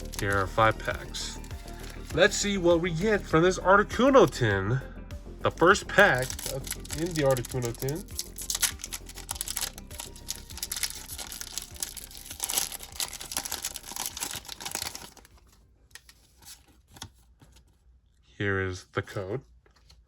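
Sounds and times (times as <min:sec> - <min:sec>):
foil wrapper crinkling: 0:00.0 - 0:02.2, 0:05.9 - 0:17.0
cards rustling: 0:00.0 - 0:03.1, 0:05.5 - 0:17.9, 0:19.1 - 0:20.0.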